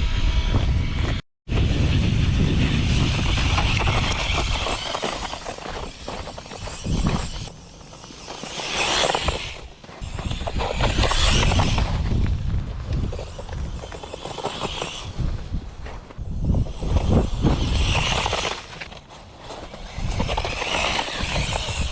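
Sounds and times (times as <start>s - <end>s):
radio-controlled car driving: 0.0s - 21.9s.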